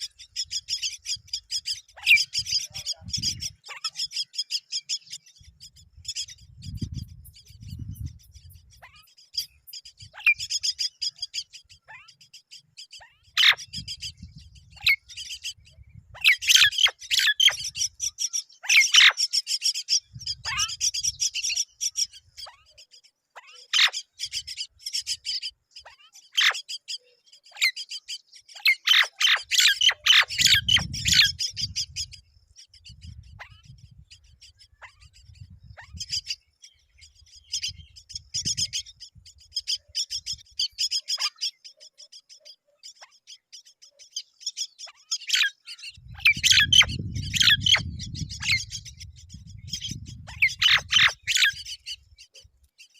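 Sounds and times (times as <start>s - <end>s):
harsh bird squawks: 0.0s - 5.4s, 27.6s - 32.1s, 44.6s - 52.0s
high bird chirps: 0.0s - 52.9s.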